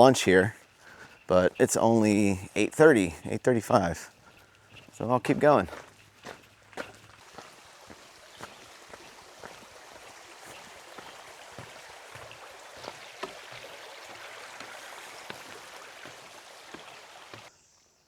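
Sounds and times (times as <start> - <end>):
footsteps crunching on trail: 0.0 - 17.5
stream water rushing: 5.5 - 17.5.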